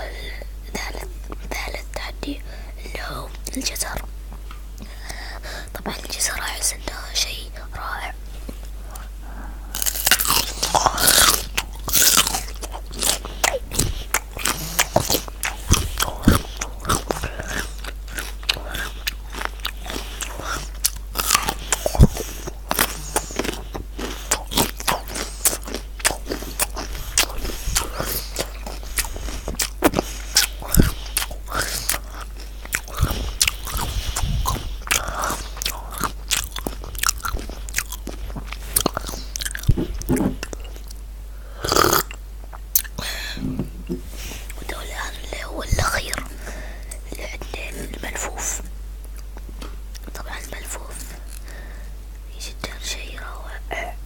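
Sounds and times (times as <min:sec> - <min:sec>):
crunchy vegetables being chewed: 0:09.7 - 0:52.9.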